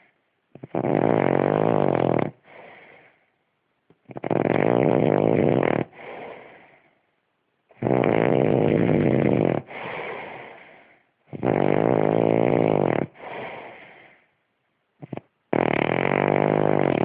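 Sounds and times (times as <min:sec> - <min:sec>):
man snoring loudly: 0:00.6 - 0:02.4, 0:04.1 - 0:06.4, 0:07.8 - 0:10.5, 0:11.3 - 0:13.8, 0:15.0 - 0:17.0.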